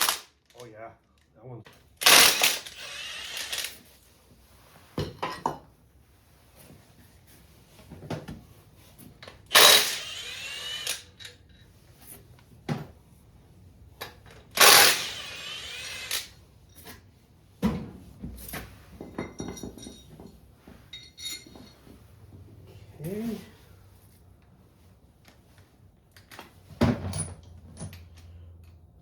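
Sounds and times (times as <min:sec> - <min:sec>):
metal parts clinking: 0:00.0 - 0:01.2, 0:02.0 - 0:03.8, 0:09.5 - 0:11.7, 0:20.9 - 0:21.8
power tool whining: 0:02.0 - 0:03.8, 0:09.5 - 0:11.2, 0:14.6 - 0:16.3.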